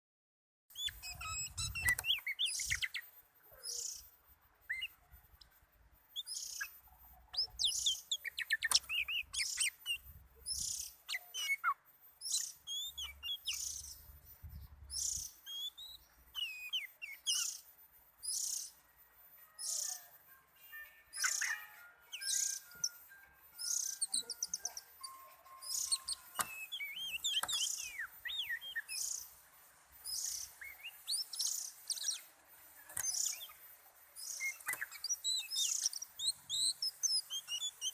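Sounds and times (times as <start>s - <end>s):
bird singing whistles: 0.7s - 4.0s, 4.7s - 5.0s, 7.4s - 14.0s, 14.9s - 17.6s, 19.4s - 29.2s, 30.1s - 33.6s, 34.2s - 37.9s.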